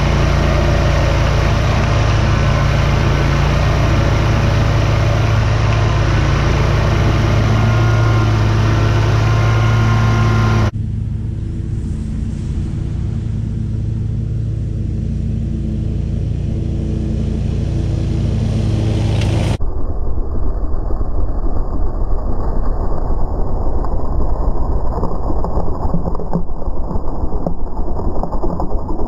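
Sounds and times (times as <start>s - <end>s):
mower engine running: 0.0s - 19.6s.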